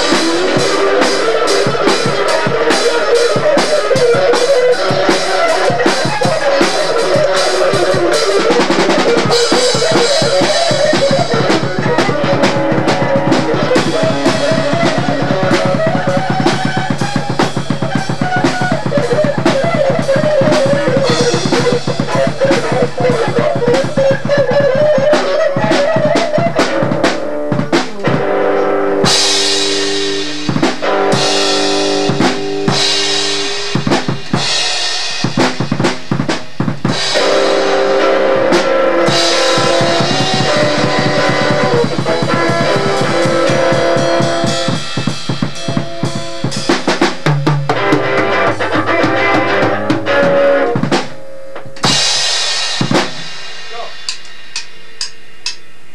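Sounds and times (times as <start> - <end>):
rock jam on drums and guitar: 0.0 - 55.9.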